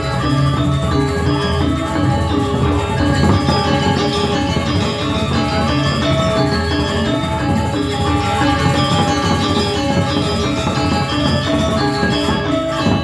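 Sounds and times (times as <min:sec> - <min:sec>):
gamelan ringing metal tones: 0:00.0 - 0:13.0.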